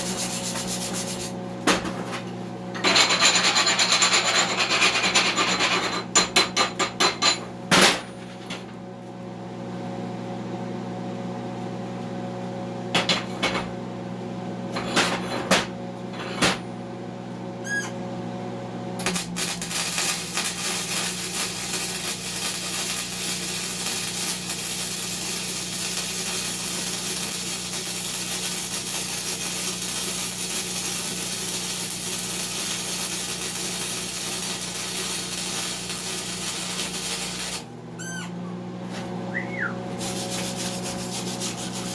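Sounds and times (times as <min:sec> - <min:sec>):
welding arc crackling hiss: 0:00.0 - 0:01.4, 0:19.0 - 0:37.7, 0:39.9 - 0:41.9
welding machine hum: 0:00.0 - 0:06.0, 0:18.9 - 0:38.2, 0:38.8 - 0:41.9.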